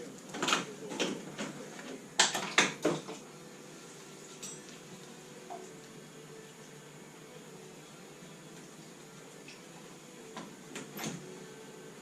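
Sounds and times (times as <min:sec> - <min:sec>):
metal tools clinking: 0:04.4 - 0:04.7.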